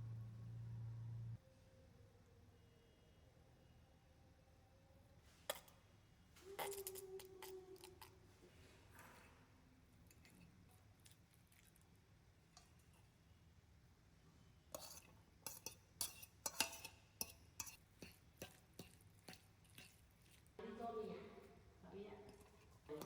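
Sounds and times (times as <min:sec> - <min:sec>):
kitchenware clinking: 0:06.5 - 0:08.1, 0:14.8 - 0:20.4.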